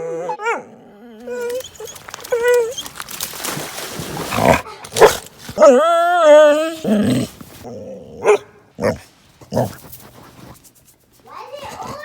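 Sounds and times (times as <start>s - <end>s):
dog whining: 0.0s - 3.6s, 4.2s - 9.8s
dog grunting and huffing: 1.0s - 10.9s.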